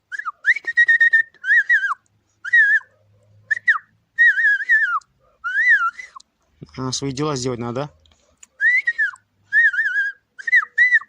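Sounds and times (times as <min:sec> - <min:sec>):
person whistling: 0:00.1 - 0:02.9, 0:03.5 - 0:06.3, 0:08.6 - 0:11.0.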